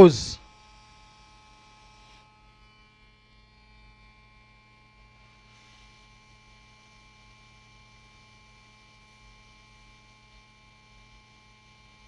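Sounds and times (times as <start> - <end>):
faint mains hum: 0.0 - 0.4.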